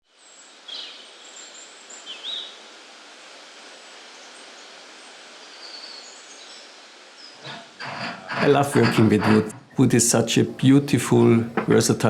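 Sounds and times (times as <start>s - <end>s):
steady outdoor hiss: 0.0s - 12.0s
small birds chirping: 0.2s - 2.6s, 4.1s - 7.8s.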